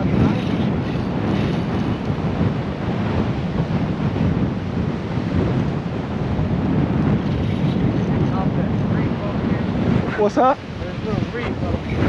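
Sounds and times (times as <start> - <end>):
strong wind buffeting microphone: 0.0 - 12.0.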